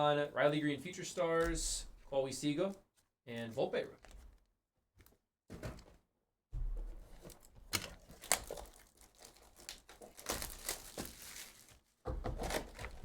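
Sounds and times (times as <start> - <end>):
foil wrapper crinkling and tearing: 7.7 - 13.0.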